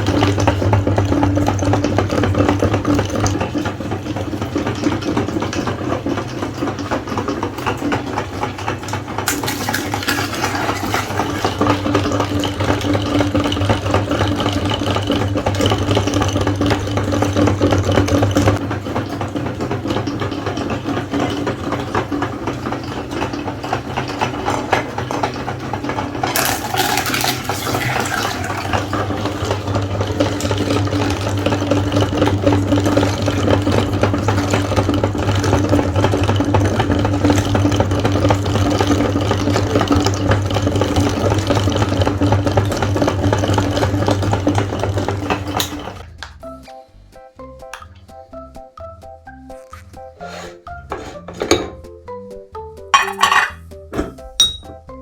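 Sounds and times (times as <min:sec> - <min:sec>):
electric meat grinder running: 0:00.0 - 0:46.4.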